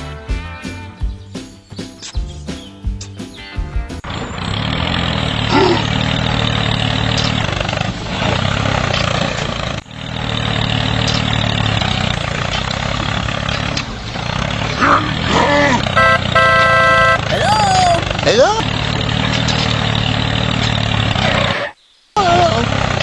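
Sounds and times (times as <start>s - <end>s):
tractor engine running: 3.9s - 21.7s, 22.3s - 23.0s.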